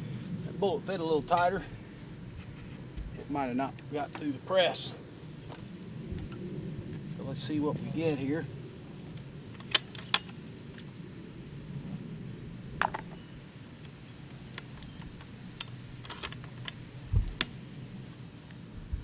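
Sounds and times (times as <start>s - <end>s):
steady low hum: 0.0s - 19.0s
gun metallic clicks: 9.6s - 10.9s, 14.3s - 17.6s.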